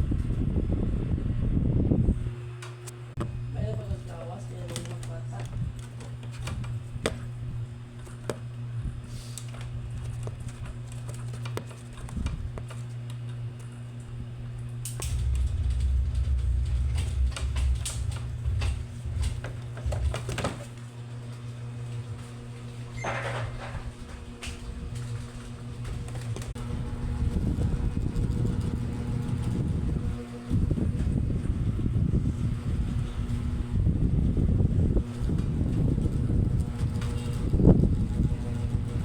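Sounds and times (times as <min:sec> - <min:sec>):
heavy low rumble: 0:00.0 - 0:02.4, 0:14.0 - 0:39.0
ceiling fan humming: 0:00.0 - 0:39.0.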